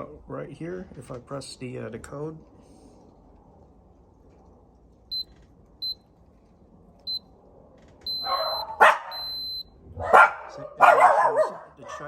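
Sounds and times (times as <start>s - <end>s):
keypad lock beeping: 5.1s - 6.0s, 8.0s - 9.7s.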